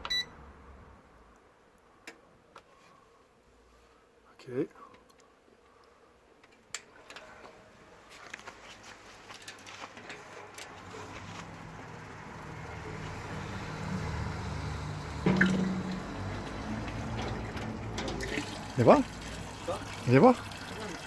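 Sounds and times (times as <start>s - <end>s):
water running into metal kettle: 11.4s - 21.0s.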